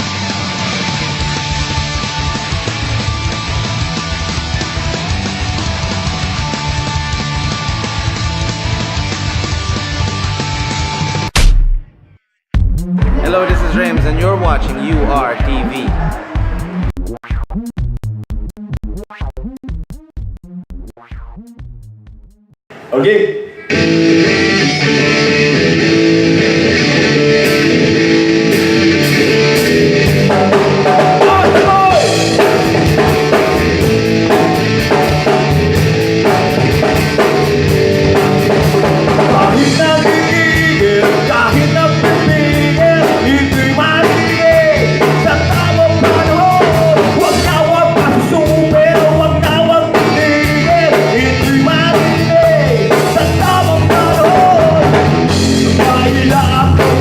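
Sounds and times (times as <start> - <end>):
electric guitar: 0.0 - 11.3, 23.6 - 57.0
bass guitar: 0.0 - 22.5, 23.6 - 57.0
drum kit with cymbals: 28.5 - 57.0
lead vocal singing: 30.8 - 33.6, 39.0 - 57.0.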